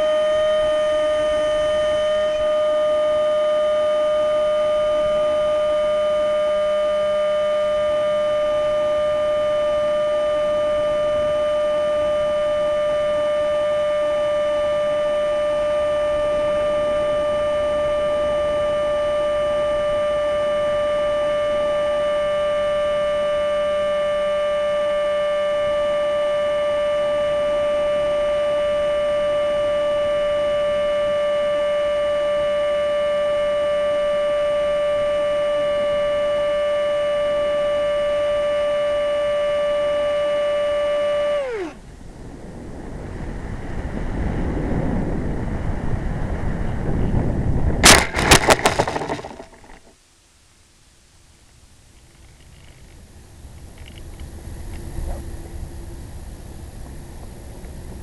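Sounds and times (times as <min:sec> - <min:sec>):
model motor whining: 0:00.0 - 0:42.0.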